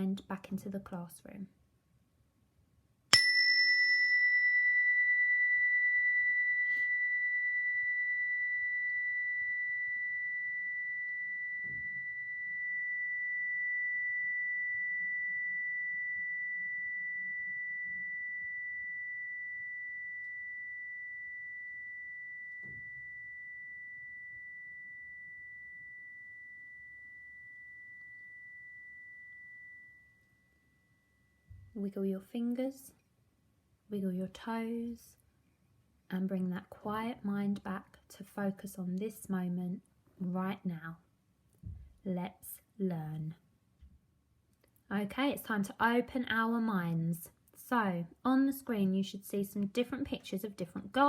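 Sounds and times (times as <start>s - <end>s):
meditation chime ringing: 3.2s - 31.8s.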